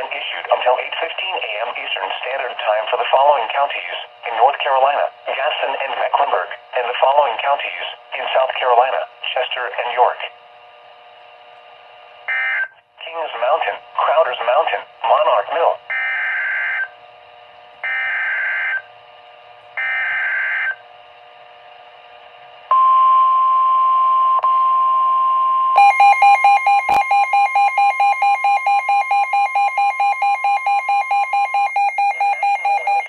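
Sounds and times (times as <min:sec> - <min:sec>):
steady warning alarm tone: 0:12.3 - 0:17.0, 0:17.8 - 0:18.9, 0:19.8 - 0:20.9, 0:22.7 - 0:33.0
rapid pulsing electronic beep: 0:25.7 - 0:33.0.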